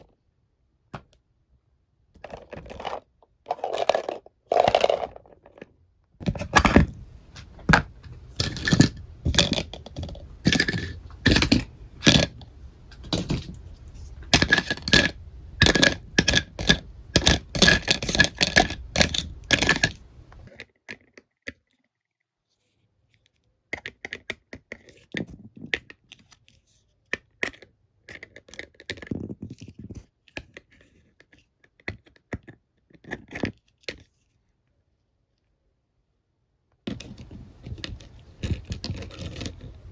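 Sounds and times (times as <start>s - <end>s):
plastic toy pieces clicking: 8.4s - 12.4s, 14.3s - 20.0s.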